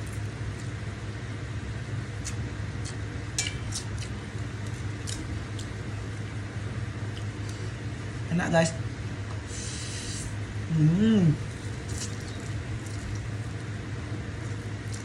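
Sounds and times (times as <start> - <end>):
steady low hum: 0.0 - 15.0
wet chewing smacks: 11.6 - 13.7.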